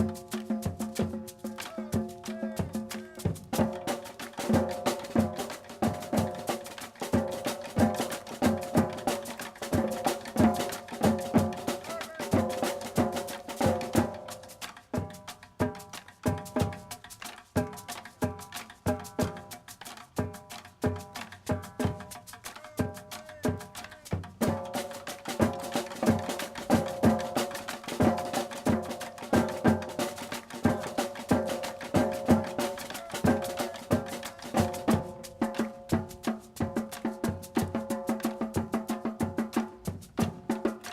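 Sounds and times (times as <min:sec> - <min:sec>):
bass drums steady beat: 0:00.0 - 0:06.5
marching drumline cadence: 0:00.0 - 0:40.9.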